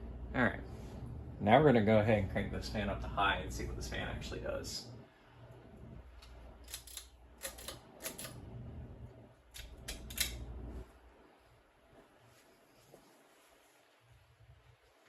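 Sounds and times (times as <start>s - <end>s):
sharp switch clicks: 9.6s - 10.5s.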